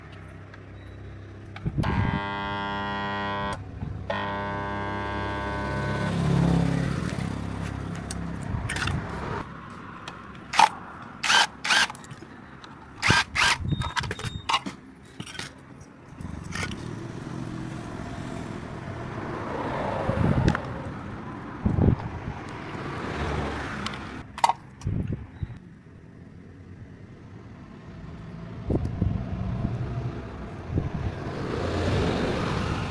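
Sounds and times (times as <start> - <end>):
electric water pump motor humming: 1.8 - 6.6
sharp metallic clicks and knocks: 10.0 - 16.9.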